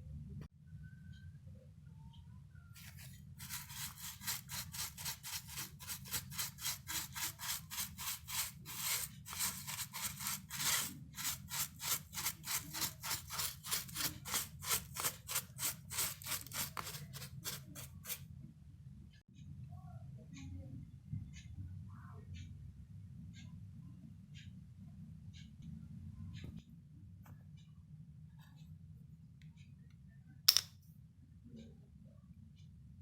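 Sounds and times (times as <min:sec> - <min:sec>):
scrubbing keyboard parts: 0:02.8 - 0:18.2.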